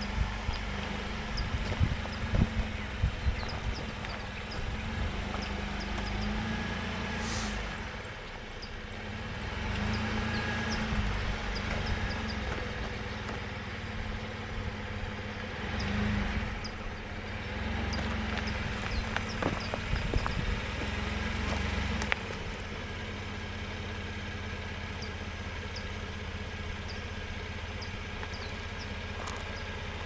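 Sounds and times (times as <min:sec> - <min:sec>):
pickup truck engine running: 0:00.0 - 0:30.0.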